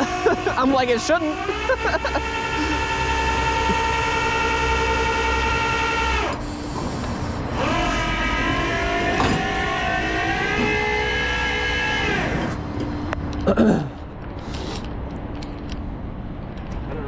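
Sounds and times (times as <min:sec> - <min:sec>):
hydraulic pump whining: 0:00.0 - 0:13.2.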